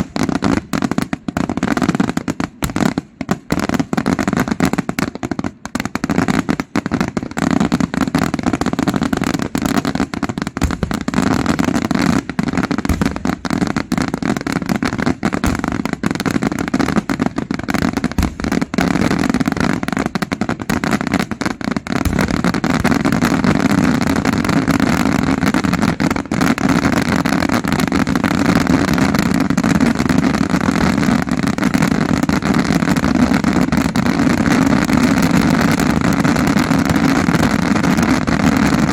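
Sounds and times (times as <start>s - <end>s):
fireworks bangs and crackles: 0.0s - 38.9s.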